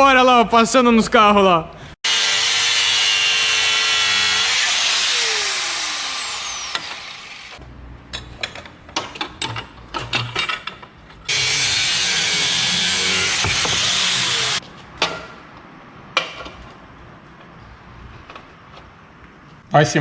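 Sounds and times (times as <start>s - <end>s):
power grinder cutting metal: 2.0s - 7.6s, 11.3s - 14.6s.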